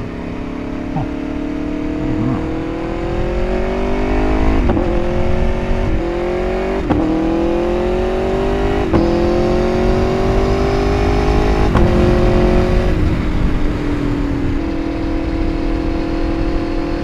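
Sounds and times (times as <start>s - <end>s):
motorcycle engine accelerating: 0.0s - 17.0s
wind rumble: 7.0s - 16.8s.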